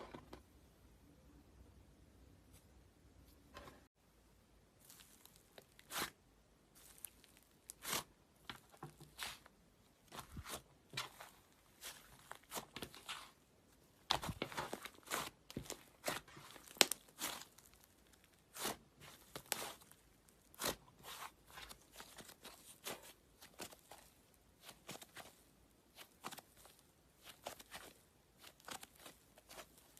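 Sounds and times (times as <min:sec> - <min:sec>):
slime crackling and snapping: 0:14.2 - 0:20.8.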